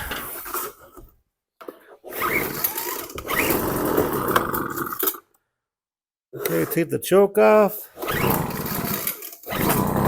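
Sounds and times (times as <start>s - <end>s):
leaf blower engine pull-started: 2.1s - 5.2s, 8.0s - 10.0s.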